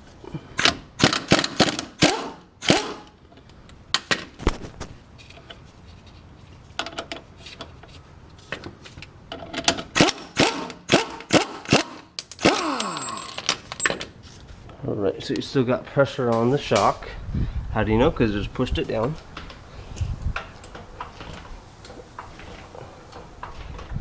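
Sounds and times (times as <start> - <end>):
hand tools clanking on metal: 12.2 - 14.1.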